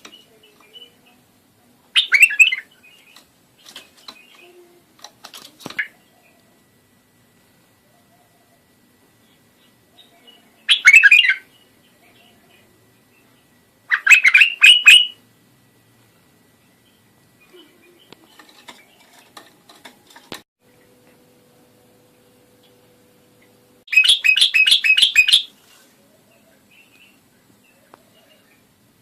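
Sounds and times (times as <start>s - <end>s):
bird singing: 0.0s - 1.2s, 1.9s - 4.8s, 9.2s - 15.2s, 16.6s - 19.5s, 22.6s - 25.5s, 26.2s - 28.8s.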